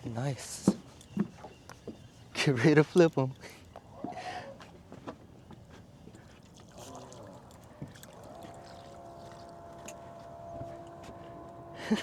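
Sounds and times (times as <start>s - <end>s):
faint trolling motor hum: 3.0s - 12.0s.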